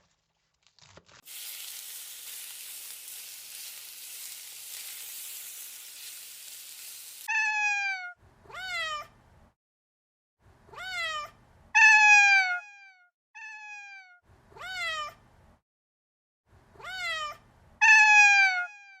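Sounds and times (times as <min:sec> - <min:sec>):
cat meowing: 0:07.3 - 0:09.1, 0:10.7 - 0:15.2, 0:16.8 - 0:19.0.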